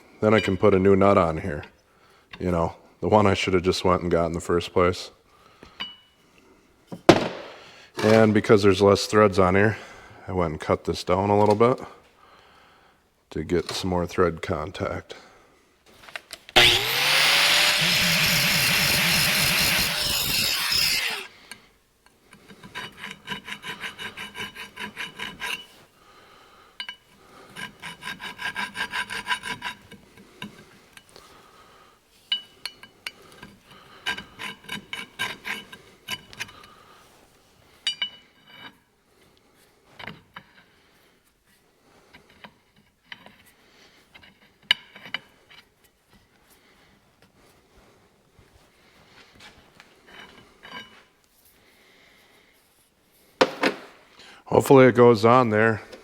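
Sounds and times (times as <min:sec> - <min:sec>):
hand tool filing metal threads: 0:16.6 - 0:21.4, 0:22.3 - 0:25.9, 0:26.8 - 0:31.1, 0:32.3 - 0:36.8.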